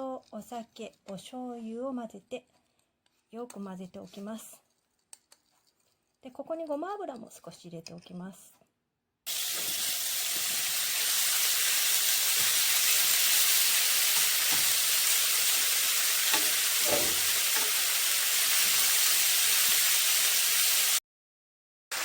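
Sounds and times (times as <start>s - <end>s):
beef sizzling in a pan: 9.3s - 21.0s
utensil knocking on pan: 14.2s - 14.8s, 16.3s - 17.9s.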